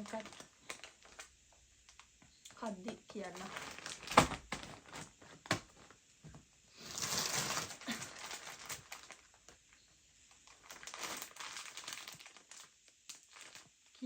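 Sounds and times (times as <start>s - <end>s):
snack packaging rustling: 0.0s - 2.2s, 3.2s - 6.0s, 6.8s - 13.9s.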